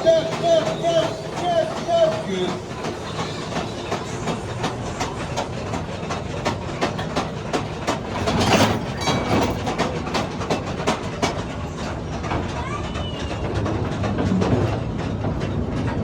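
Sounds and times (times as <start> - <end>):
train cars rattling on track: 0.0 - 16.0.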